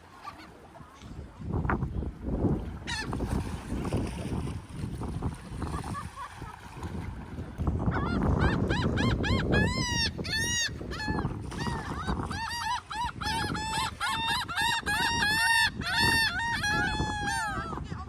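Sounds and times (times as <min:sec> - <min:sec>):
wind rumble: 0:01.0 - 0:18.0
seagulls calling: 0:02.8 - 0:03.2, 0:07.9 - 0:17.8.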